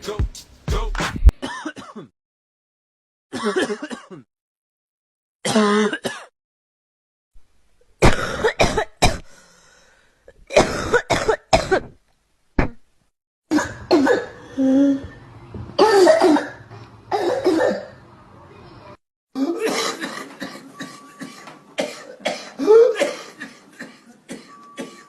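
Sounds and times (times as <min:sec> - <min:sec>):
music: 0:00.0 - 0:01.3, 0:20.7 - 0:21.8, 0:24.4 - 0:25.0
people coughing: 0:01.4 - 0:02.1, 0:03.4 - 0:04.3, 0:10.5 - 0:11.9, 0:13.5 - 0:14.5, 0:15.8 - 0:18.0, 0:19.4 - 0:25.0
throat clearing: 0:01.5 - 0:02.1, 0:03.9 - 0:04.3.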